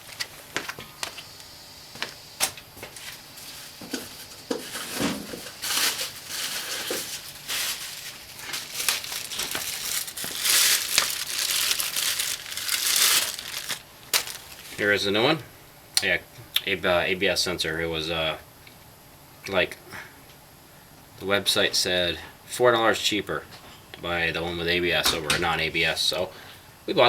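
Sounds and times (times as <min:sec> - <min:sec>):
packaging crinkling and tearing: 0:03.4 - 0:14.8.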